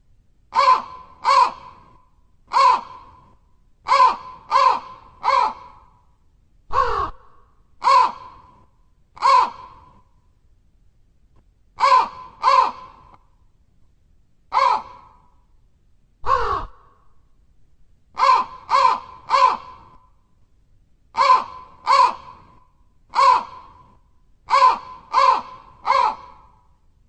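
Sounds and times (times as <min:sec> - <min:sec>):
crow cawing: 0:00.5 - 0:03.2, 0:03.9 - 0:05.9, 0:06.7 - 0:08.6, 0:09.2 - 0:10.0, 0:11.8 - 0:13.2, 0:14.5 - 0:15.3, 0:16.2 - 0:17.0, 0:18.2 - 0:20.1, 0:21.2 - 0:23.9, 0:24.5 - 0:26.7.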